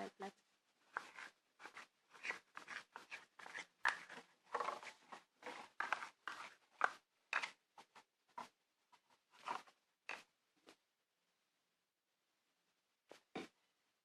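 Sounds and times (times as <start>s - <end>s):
utensil scraping slime on a plate: 0.8s - 10.3s.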